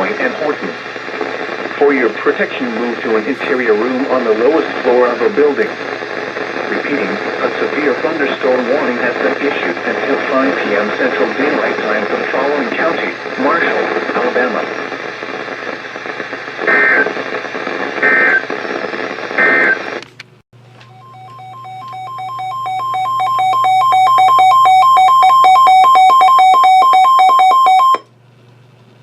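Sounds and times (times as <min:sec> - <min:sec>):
radio static hiss: 0:00.0 - 0:20.0
pulsing electronic alert tone: 0:21.0 - 0:28.0.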